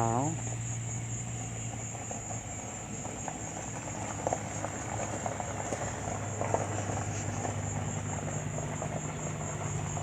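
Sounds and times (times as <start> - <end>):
low steady hum: 0.0 - 1.8
crickets chirring: 0.0 - 10.0
faint ticks and rustles: 1.6 - 10.0.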